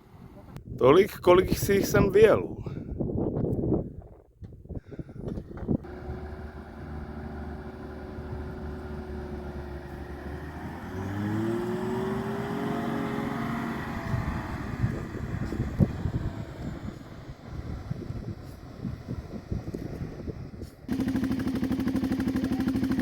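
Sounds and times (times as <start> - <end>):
vehicle engine starting and accelerating: 5.6 - 23.0.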